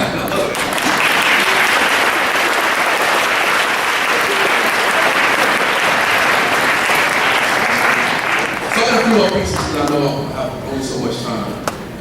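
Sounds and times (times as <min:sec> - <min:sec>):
audience applauding: 0:00.0 - 0:10.1.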